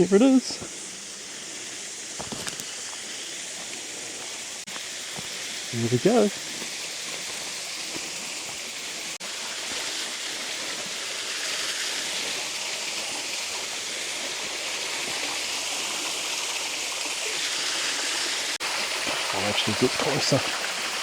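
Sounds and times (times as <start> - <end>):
waterfall rushing: 14.4 - 21.0.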